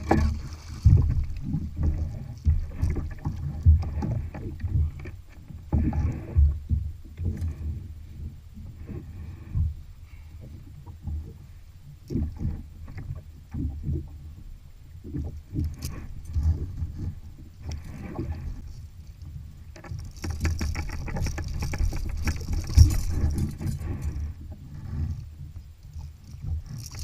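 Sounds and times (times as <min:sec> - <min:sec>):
splashing and clattering: 0:00.0 - 0:06.2, 0:19.7 - 0:24.3, 0:25.9 - 0:27.0
water lapping around kayak: 0:00.0 - 0:27.0
wind rumble on microphone: 0:00.0 - 0:27.0.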